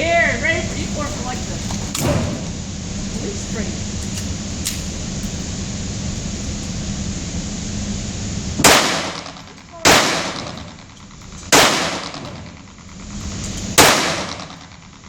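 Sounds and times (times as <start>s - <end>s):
steady background rush: 0.0s - 15.0s
gunshots: 8.6s - 10.9s, 11.5s - 12.7s, 13.8s - 14.8s.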